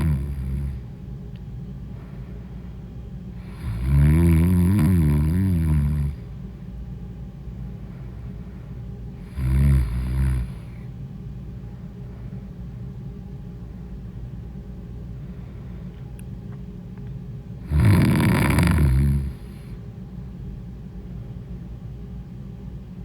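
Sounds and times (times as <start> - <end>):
person snoring loudly: 0.0 - 0.8, 3.4 - 6.2, 9.2 - 10.8, 17.6 - 19.6
steady low hum: 0.0 - 23.0.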